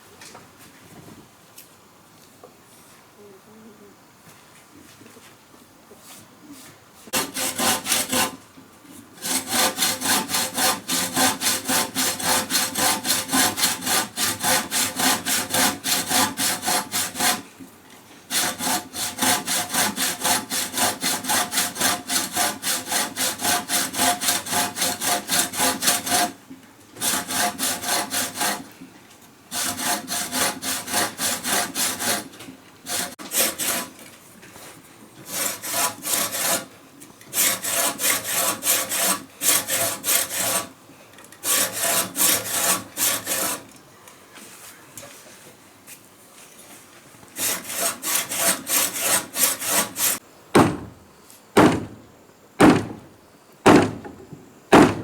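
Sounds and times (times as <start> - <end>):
hand saw cutting wood: 7.1 - 8.5, 9.2 - 17.5, 18.3 - 26.4, 27.0 - 28.8, 29.5 - 36.7, 37.3 - 40.8, 41.4 - 43.7, 47.3 - 50.9.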